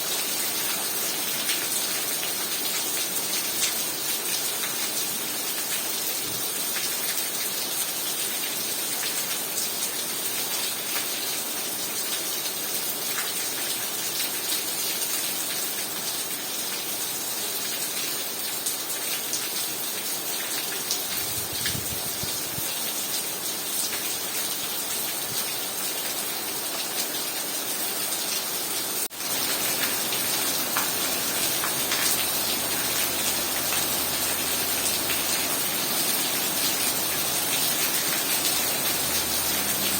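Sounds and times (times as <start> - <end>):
heavy rain falling: 15.3 - 39.9.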